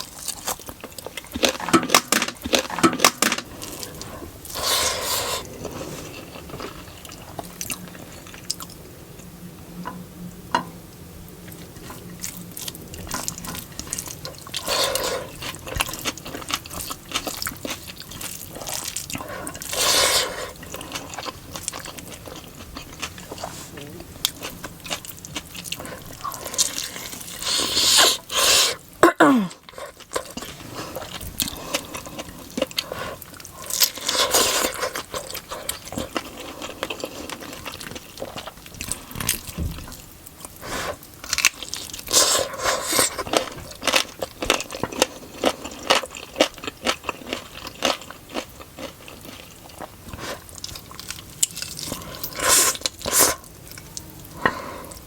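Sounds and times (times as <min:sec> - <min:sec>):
chewing and crunching: 0:00.0 - 0:08.8, 0:11.4 - 0:28.9, 0:29.5 - 0:55.0.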